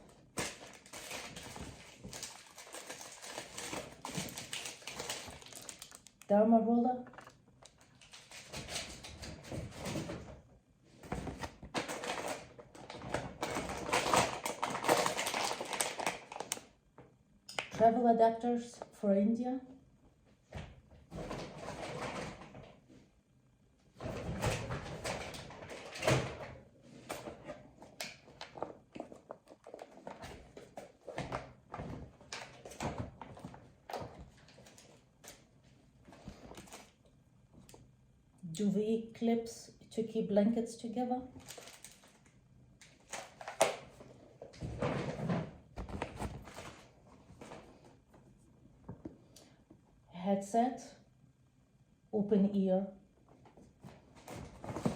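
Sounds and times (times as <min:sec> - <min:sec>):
packaging rustling and crinkling: 0:00.1 - 0:06.3, 0:07.1 - 0:10.1, 0:11.1 - 0:16.8, 0:27.1 - 0:35.5, 0:36.1 - 0:37.0, 0:41.4 - 0:48.3, 0:53.8 - 0:54.9
packaging rustling and knocks: 0:00.4 - 0:06.1, 0:11.1 - 0:16.6, 0:44.6 - 0:47.8, 0:53.8 - 0:54.9.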